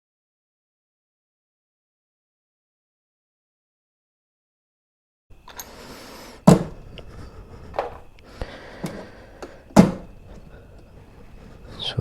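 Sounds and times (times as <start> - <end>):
saddlebag knocking and clicking: 6.5 - 6.8, 9.8 - 10.1.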